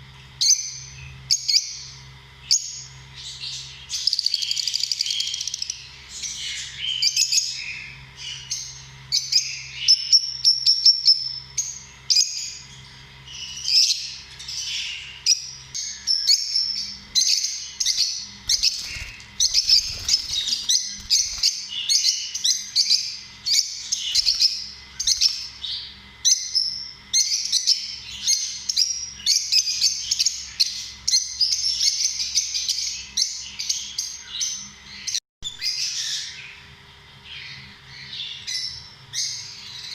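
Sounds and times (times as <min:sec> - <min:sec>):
lovebirds chirping: 0:00.4 - 0:36.6.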